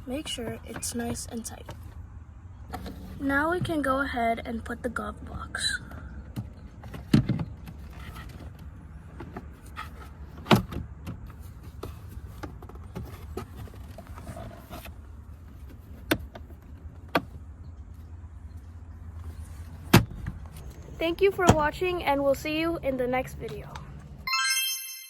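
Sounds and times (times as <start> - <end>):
steady low hum: 17.4 - 24.3.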